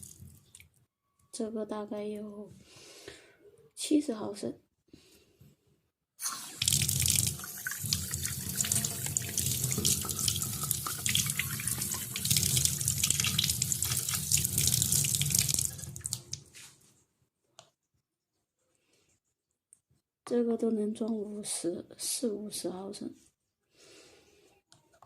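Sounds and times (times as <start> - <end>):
tap water running into sink: 6.2 - 16.5.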